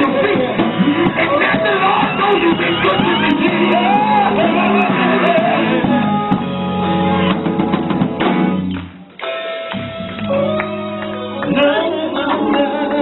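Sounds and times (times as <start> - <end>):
person singing gliding line: 0.0 - 6.0, 10.3 - 13.0
drums: 0.0 - 13.0
electric guitar: 0.0 - 13.0
gospel band playing: 0.0 - 13.0.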